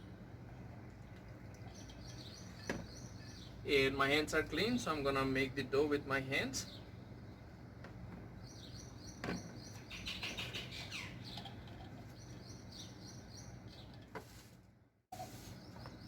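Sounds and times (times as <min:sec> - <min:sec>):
small birds chirping: 0:01.5 - 0:05.0, 0:06.4 - 0:14.1, 0:15.5 - 0:16.0.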